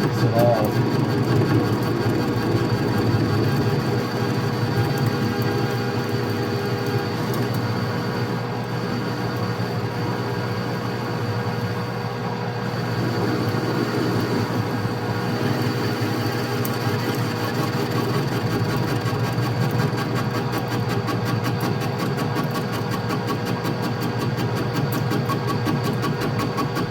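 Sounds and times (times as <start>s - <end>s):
lathe motor and gear hum: 0.0s - 26.9s
rapid ticking of lathe tool: 16.5s - 26.9s.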